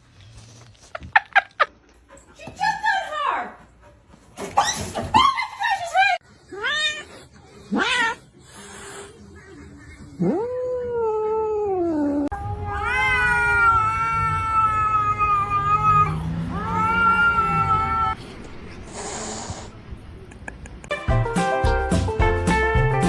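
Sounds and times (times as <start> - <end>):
cat yowling: 7.7 - 8.2, 10.2 - 18.2.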